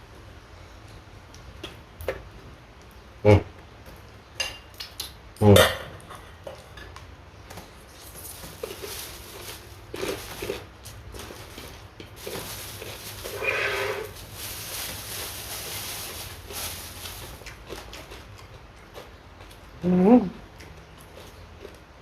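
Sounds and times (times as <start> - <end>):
person chewing: 7.8 - 13.4, 17.0 - 22.0
person humming mmm: 19.8 - 20.4.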